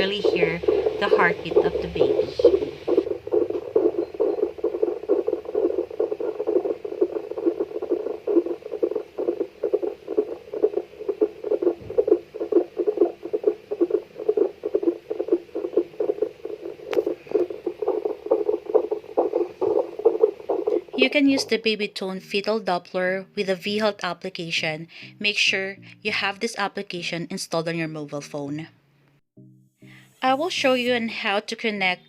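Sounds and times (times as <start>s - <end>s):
whooshing heartbeat pulse: 0.0s - 21.6s.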